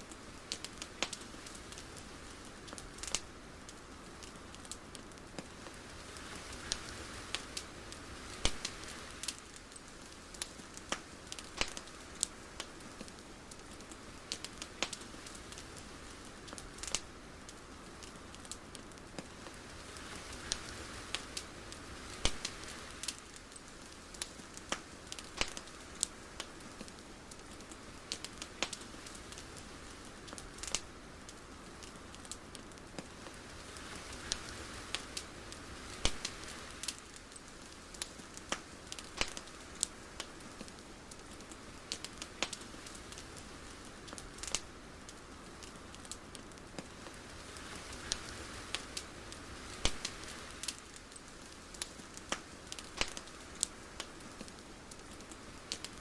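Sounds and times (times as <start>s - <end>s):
sharp crackles and clicks: 0.0s - 56.0s
soft steady hiss: 0.0s - 56.0s.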